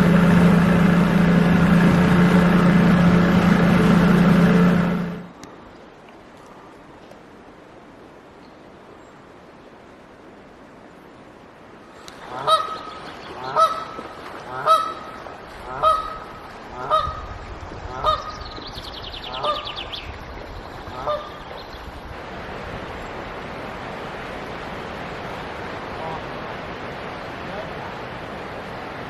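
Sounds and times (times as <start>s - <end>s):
steady rushing noise: 0.0s - 5.5s
bird calling loudly: 12.2s - 17.3s, 17.9s - 20.1s, 20.7s - 21.8s.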